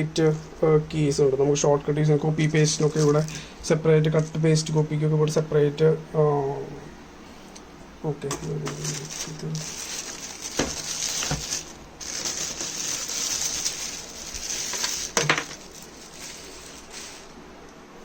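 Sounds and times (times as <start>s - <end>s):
plastic packaging rustling: 2.6s - 3.5s, 8.4s - 17.4s.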